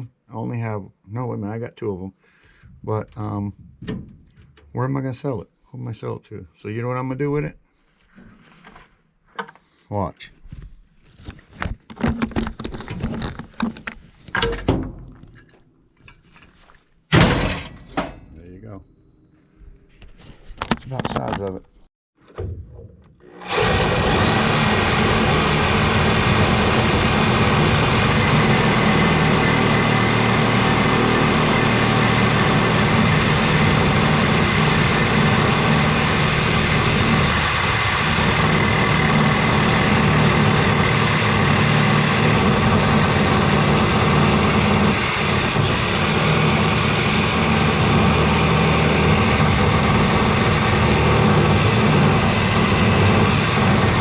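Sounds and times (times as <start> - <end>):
small engine running steadily: 23.3 - 54.0.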